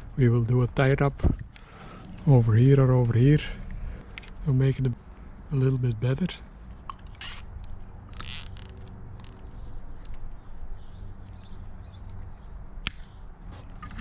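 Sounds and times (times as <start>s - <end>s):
cable tie ratcheting zip: 7.0s - 9.5s
cable tie rasp: 7.1s - 7.5s, 8.1s - 9.4s.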